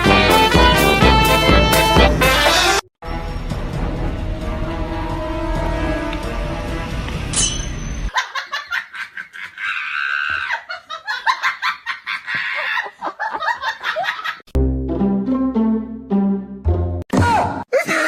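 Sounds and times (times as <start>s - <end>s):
background music: 0.0s - 7.6s, 14.6s - 17.1s
rapid high-pitched laughter: 8.1s - 14.4s.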